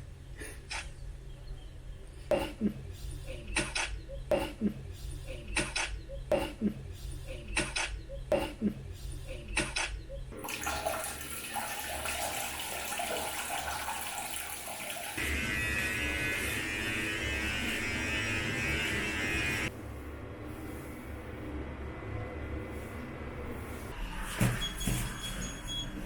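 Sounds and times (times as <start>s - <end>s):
tap water running: 10.4s - 15.2s.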